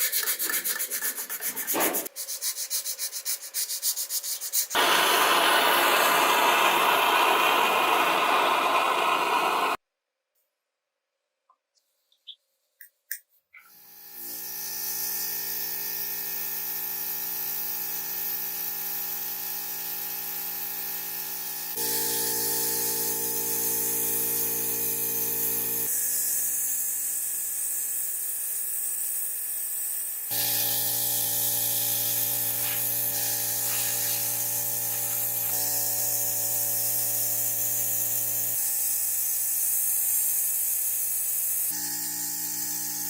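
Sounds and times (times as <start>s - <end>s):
small electric motor running: 4.7s - 9.8s, 13.7s - 43.0s.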